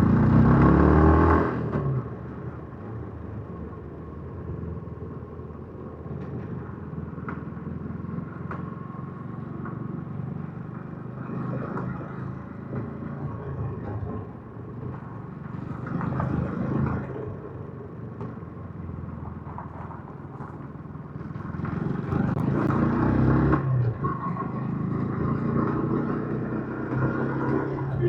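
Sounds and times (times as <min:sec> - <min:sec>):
motorcycle engine revving: 0:21.2 - 0:28.0.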